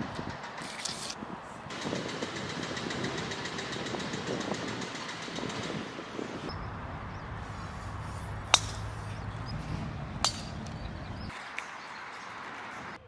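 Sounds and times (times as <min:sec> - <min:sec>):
outdoor hum: 0:00.0 - 0:13.0
golf club striking ball: 0:08.2 - 0:11.7.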